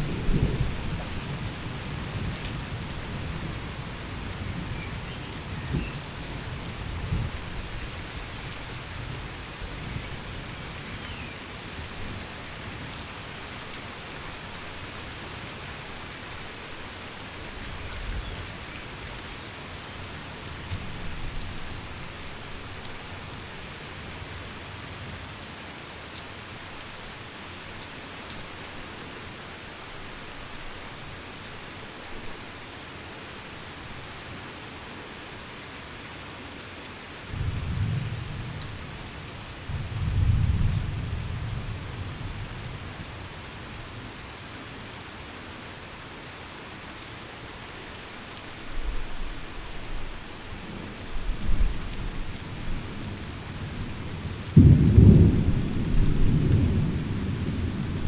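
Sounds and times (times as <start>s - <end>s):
distant thunder rumbling: 0.0s - 7.8s, 51.1s - 58.0s
heavy rain falling: 0.0s - 58.0s.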